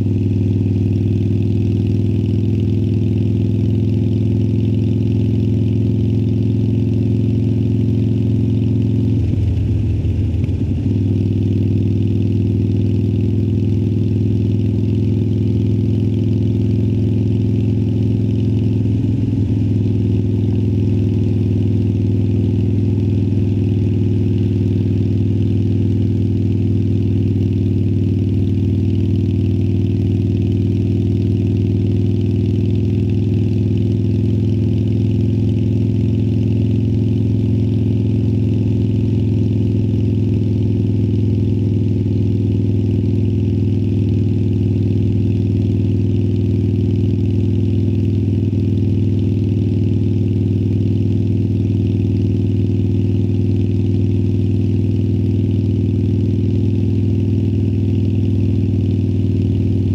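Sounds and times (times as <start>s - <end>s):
motorcycle engine idling low: 0.0s - 59.9s.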